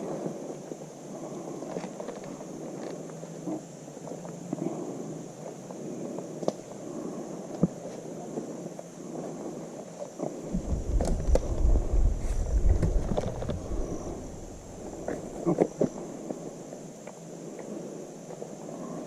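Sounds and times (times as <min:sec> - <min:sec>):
rustling: 0:10.2 - 0:16.6
low rumble on microphone: 0:10.3 - 0:16.6
footsteps: 0:10.5 - 0:16.0.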